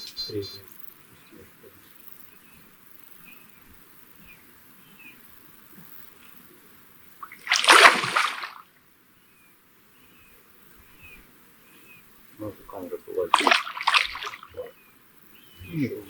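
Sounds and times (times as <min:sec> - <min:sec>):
faint high chirps: 0:00.0 - 0:06.4, 0:10.1 - 0:16.0
loud splash in water: 0:07.2 - 0:08.6, 0:13.3 - 0:14.5.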